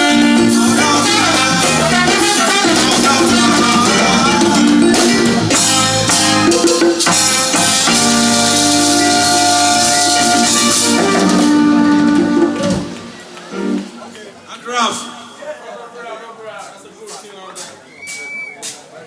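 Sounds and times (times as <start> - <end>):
hand percussion and drums: 0.0 - 13.9, 17.1 - 18.9
live band playing: 0.0 - 14.2.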